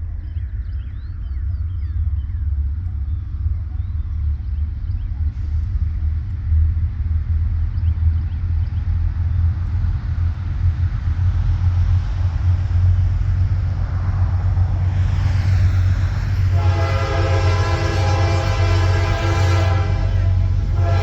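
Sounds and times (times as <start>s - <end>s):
diesel locomotive engine rumble: 0.0s - 21.0s
train air horn chord: 16.4s - 21.0s.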